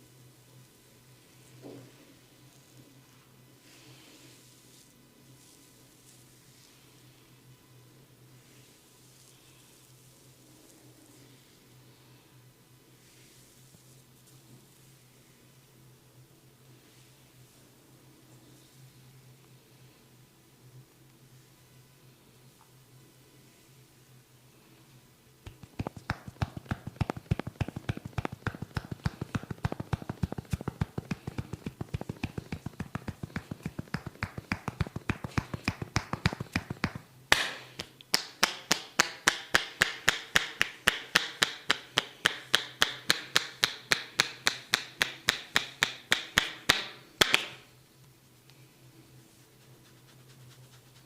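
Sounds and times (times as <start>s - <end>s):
hands tapping on head: 25.5s - 47.6s
sharp slap: 25.5s - 47.6s.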